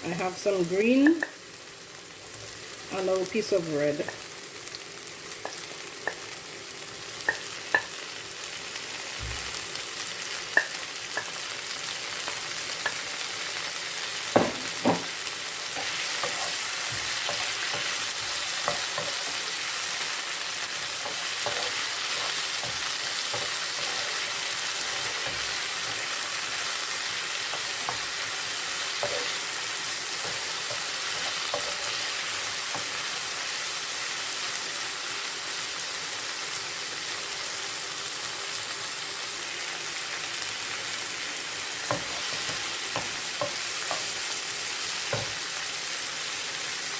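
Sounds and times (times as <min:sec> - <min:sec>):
vegetables sizzling in hot oil: 0:00.0 - 0:46.9
utensil knocking against pot: 0:14.4 - 0:15.1.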